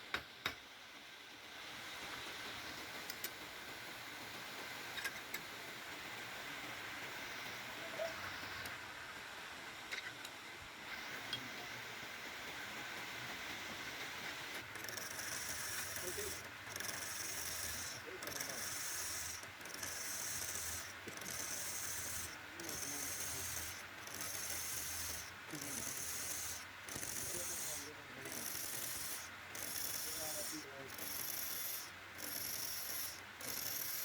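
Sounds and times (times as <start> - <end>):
scratchy rubbing on wood: 14.7 - 34.0.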